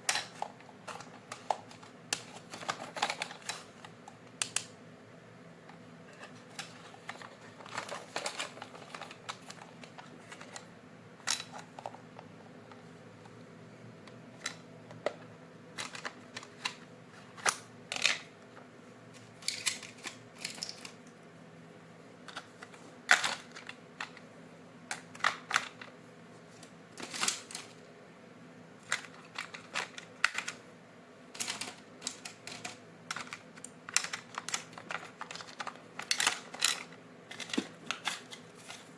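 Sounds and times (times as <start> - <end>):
plastic packaging rustling: 0.0 - 3.9, 6.1 - 12.0, 24.9 - 27.8, 28.8 - 30.6, 31.3 - 38.9
faint steady hum: 0.0 - 38.9.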